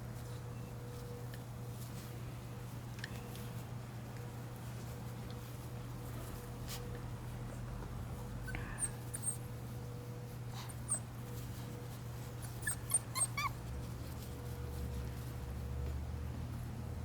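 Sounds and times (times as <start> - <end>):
puppies whimpering: 8.8 - 9.5, 12.4 - 13.6.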